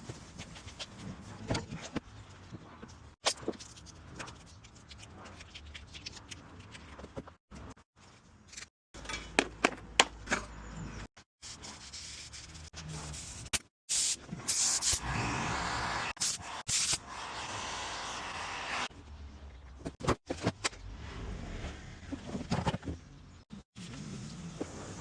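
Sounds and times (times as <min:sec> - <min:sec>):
short hissing bursts: 0:13.2 - 0:18.9.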